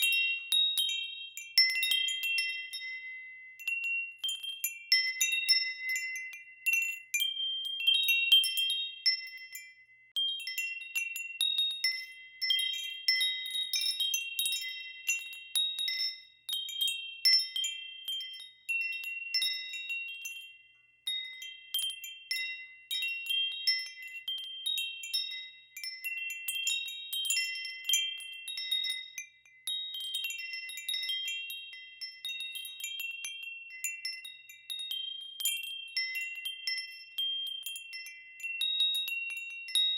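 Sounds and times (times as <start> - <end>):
wind chimes ringing: 0.0 - 39.9.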